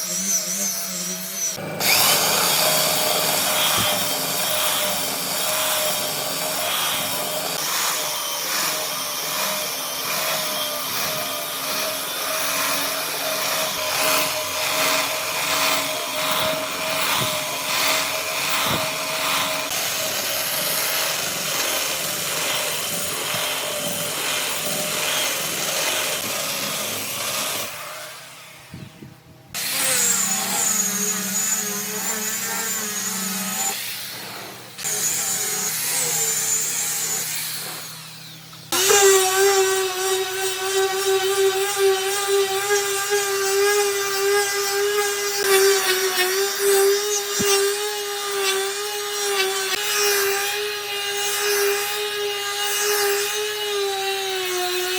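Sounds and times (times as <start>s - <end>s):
power tool grinding wood: 0.0s - 28.8s, 29.5s - 54.9s
higher wavering tool whine: 29.8s - 54.7s.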